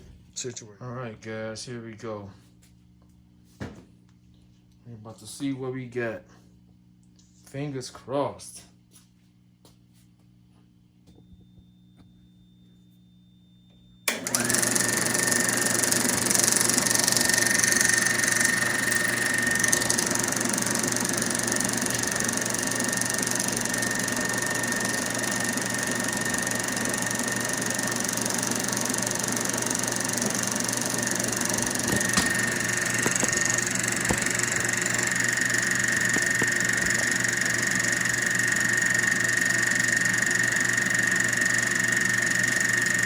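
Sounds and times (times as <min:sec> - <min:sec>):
faint hum: 0:00.0 - 0:14.1
projector motor whining: 0:14.0 - 0:43.0.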